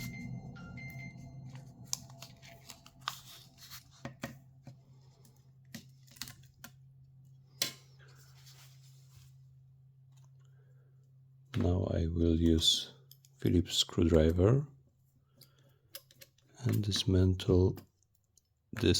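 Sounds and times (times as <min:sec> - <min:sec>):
low hum: 0:00.0 - 0:05.7.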